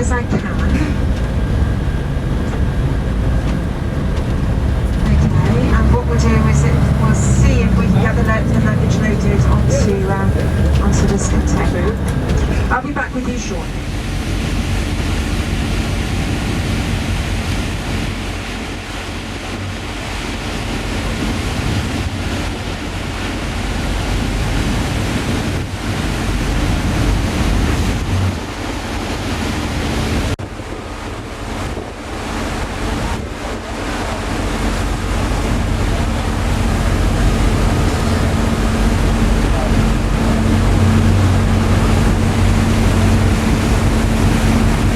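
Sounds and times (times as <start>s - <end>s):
low mechanical hum: 0.0s - 44.9s
wind buffeting microphone: 0.0s - 44.9s.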